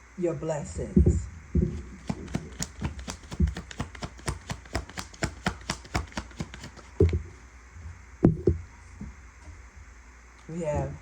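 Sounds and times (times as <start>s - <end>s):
soft thumps of cards: 1.0s - 7.4s
cards being shuffled: 1.6s - 7.3s.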